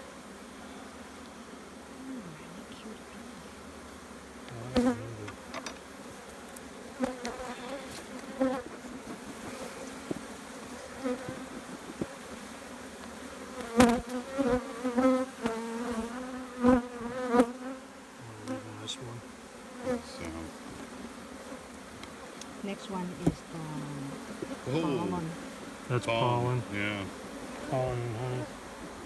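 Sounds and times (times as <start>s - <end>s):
honeybees buzzing: 0.0s - 29.0s.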